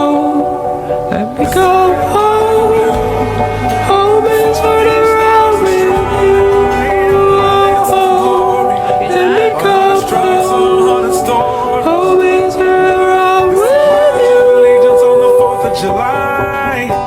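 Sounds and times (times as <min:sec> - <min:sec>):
folk-pop song: 0:00.0 - 0:17.0.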